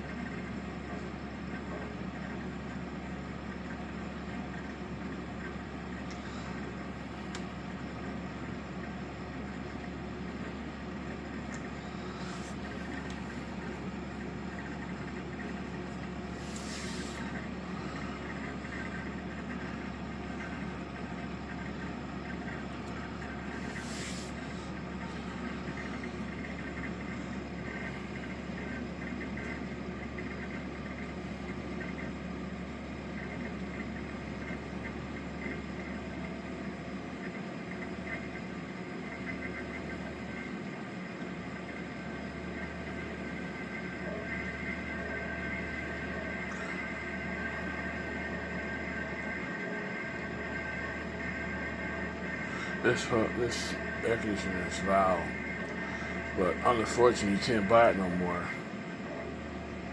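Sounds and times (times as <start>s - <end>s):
air conditioner humming: 0.0s - 59.9s
short hisses: 16.3s - 17.4s, 23.6s - 24.4s.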